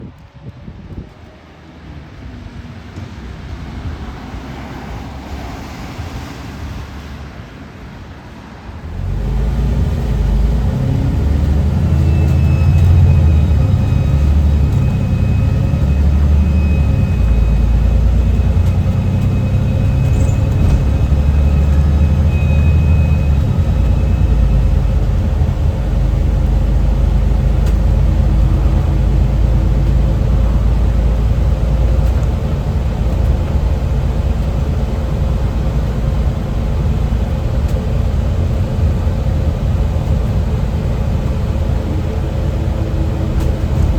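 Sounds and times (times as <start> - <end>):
bus engine accelerating: 0.0 - 43.9
wind noise on microphone: 0.0 - 43.9
high turbo whistle: 8.9 - 31.3.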